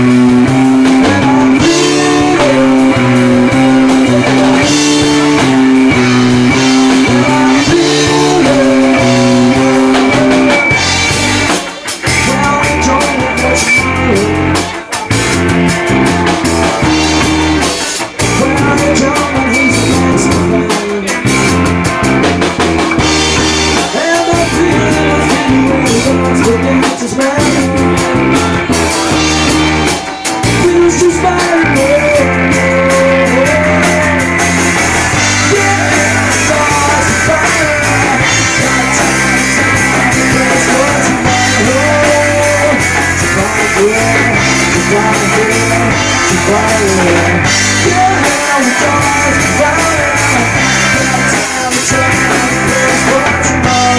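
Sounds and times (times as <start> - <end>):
loud rock music: 0.0 - 53.9.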